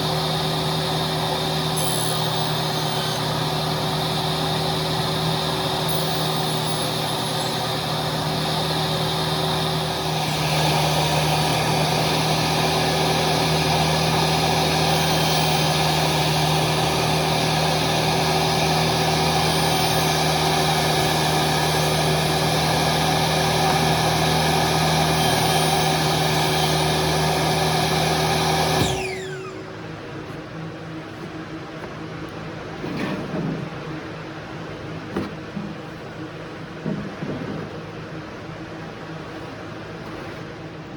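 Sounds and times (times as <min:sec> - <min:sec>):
motor spinning down: 0:00.0 - 0:29.8
power tool motor running: 0:00.0 - 0:29.8.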